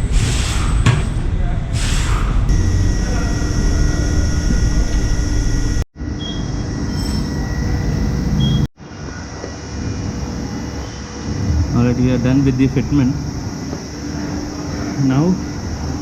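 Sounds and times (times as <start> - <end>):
machinery whining and rumbling: 2.4 - 5.8, 11.2 - 16.0.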